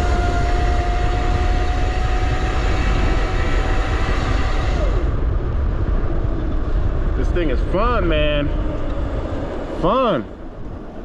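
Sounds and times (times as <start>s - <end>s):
electric motor whining: 0.0s - 5.2s
wind rush on microphone: 0.0s - 11.0s.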